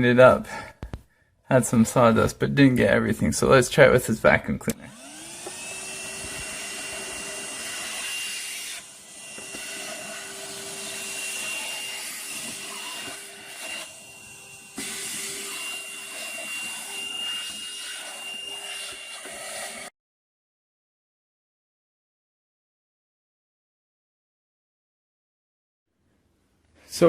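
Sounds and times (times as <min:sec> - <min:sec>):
handheld vacuum cleaner running: 0:04.8 - 0:19.9.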